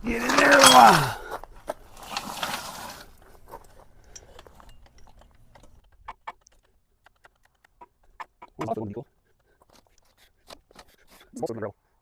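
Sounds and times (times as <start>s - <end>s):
metallic clicks and rattles: 3.6s - 7.7s.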